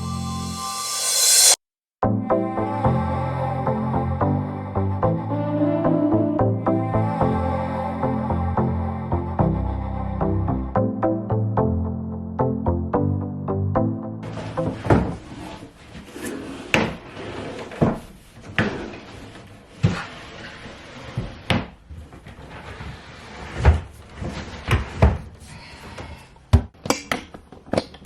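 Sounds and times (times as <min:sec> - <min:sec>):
rustling and scraping: 0:14.2 - 0:25.6.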